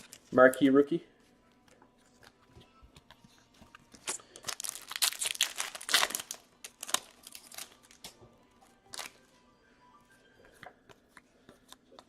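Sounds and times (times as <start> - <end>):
wrapper crinkling and tearing: 0.0 - 0.7, 3.9 - 8.2, 8.9 - 9.2.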